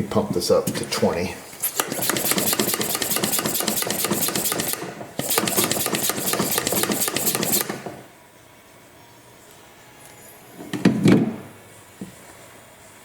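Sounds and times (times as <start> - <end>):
hand pump strokes: 1.6 - 7.9.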